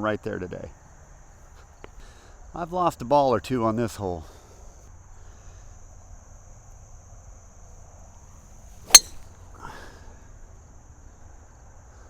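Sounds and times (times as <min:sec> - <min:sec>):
golf driver striking ball: 0:08.9 - 0:09.2
insects droning: 0:08.9 - 0:10.0.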